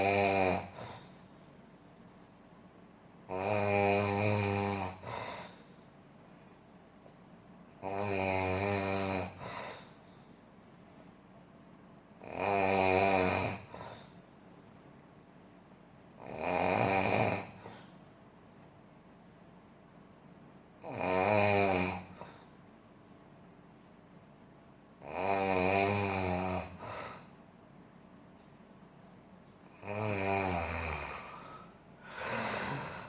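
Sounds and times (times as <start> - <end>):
person snoring heavily: 0.0 - 1.2, 3.3 - 5.6, 7.7 - 10.0, 12.2 - 14.1, 16.2 - 17.9, 20.8 - 22.5, 25.0 - 27.3, 29.7 - 33.0.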